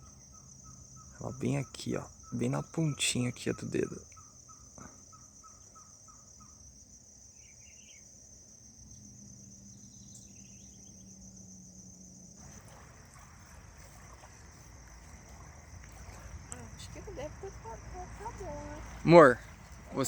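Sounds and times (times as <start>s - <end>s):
insects trilling: 0.0s - 20.0s
wash of noise: 12.4s - 20.0s.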